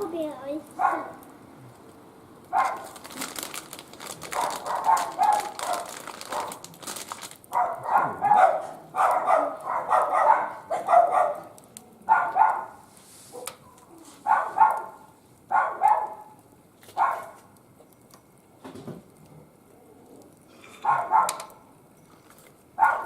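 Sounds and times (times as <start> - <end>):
wood fire crackling: 0.0 - 23.0
dog barking: 0.8 - 1.2, 2.5 - 3.0, 4.3 - 6.6, 7.5 - 16.4, 17.0 - 17.4, 20.8 - 21.5, 22.8 - 23.0.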